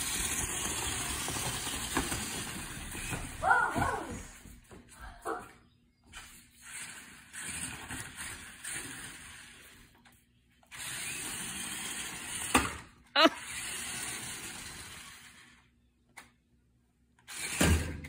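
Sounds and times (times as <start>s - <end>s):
toy truck motor whirring: 0.0s - 3.4s, 6.2s - 15.8s, 17.2s - 18.0s.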